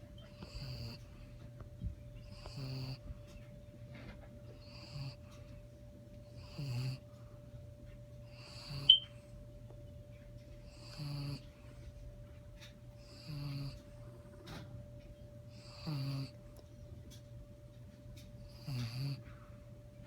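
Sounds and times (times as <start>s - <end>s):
dog snoring: 0.2s - 3.4s, 4.0s - 5.6s, 6.2s - 7.3s, 8.2s - 9.0s, 10.6s - 12.0s, 12.6s - 14.7s, 15.5s - 16.6s, 18.3s - 19.6s.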